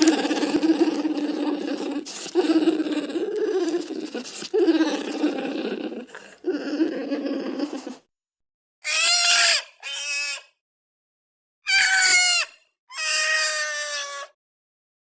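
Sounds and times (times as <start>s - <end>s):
bear cub high squealing cries: 8.8s - 10.5s, 11.7s - 14.4s.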